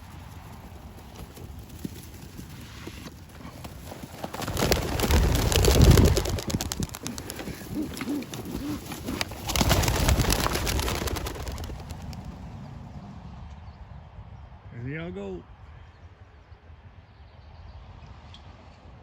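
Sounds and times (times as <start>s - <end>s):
pigeon wings flapping: 0.0s - 12.4s
pigeon cooing: 4.5s - 12.1s.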